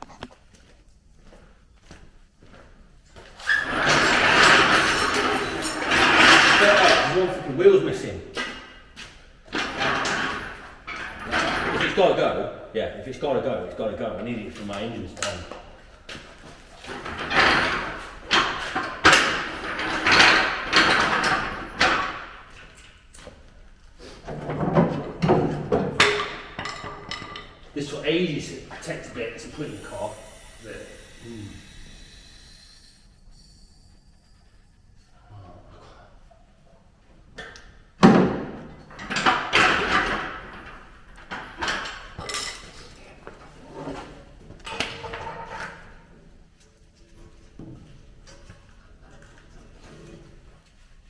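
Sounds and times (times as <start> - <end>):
knocks and clanks on car body: 38.0 - 40.3.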